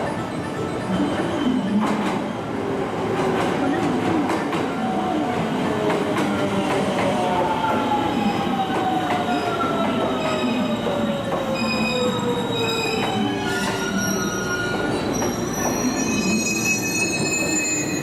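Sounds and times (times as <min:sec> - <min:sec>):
high wheel squeals: 0:11.5 - 0:18.0.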